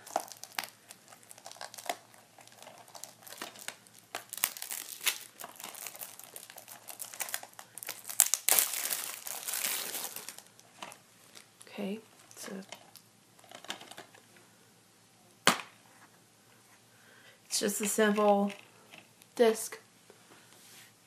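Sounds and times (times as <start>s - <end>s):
plastic wrap crinkling and tearing: 0.0s - 13.0s.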